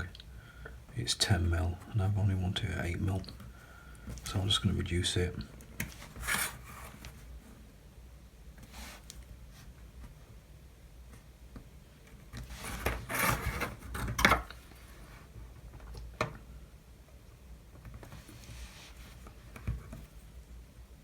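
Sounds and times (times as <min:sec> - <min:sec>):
tools rubbing and rustling: 0:05.9 - 0:07.2, 0:12.4 - 0:14.2.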